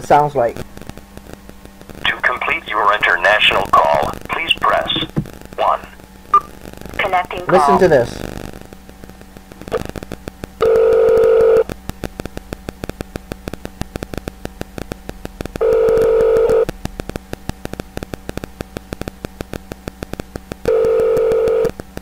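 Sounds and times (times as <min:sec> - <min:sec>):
telephone ringback tone: 0:20.7 - 0:21.7.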